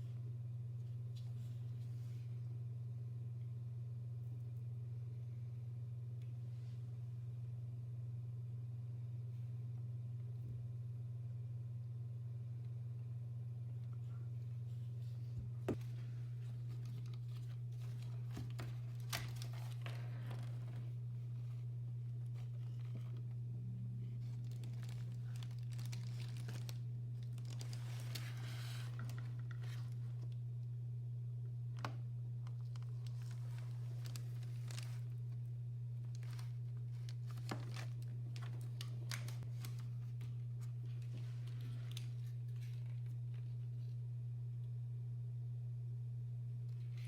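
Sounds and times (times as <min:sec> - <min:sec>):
low hum: 0:00.0 - 0:47.0
rustling: 0:14.0 - 0:30.4, 0:32.5 - 0:43.8.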